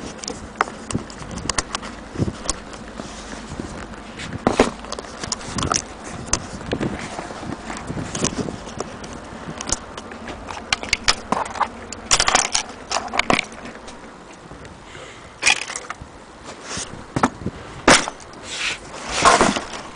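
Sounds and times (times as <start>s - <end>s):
short rustling: 0.0s - 11.5s
small objects clicking and knocking: 10.5s - 14.0s, 15.4s - 16.0s.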